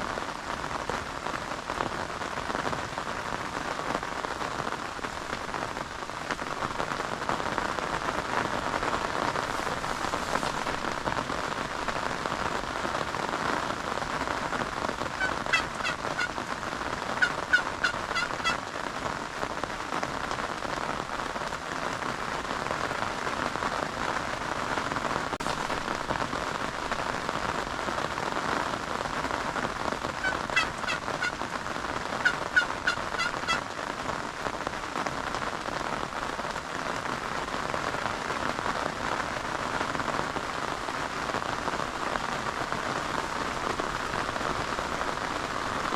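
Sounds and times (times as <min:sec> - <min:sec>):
steady rain: 0:00.0 - 0:45.9
turkey gobbling: 0:15.2 - 0:16.3, 0:17.2 - 0:18.6, 0:30.2 - 0:31.4, 0:32.2 - 0:33.6.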